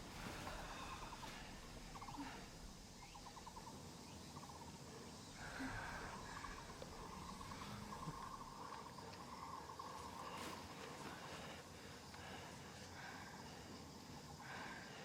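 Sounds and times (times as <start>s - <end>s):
animals trilling ticks: 1.7s - 11.2s.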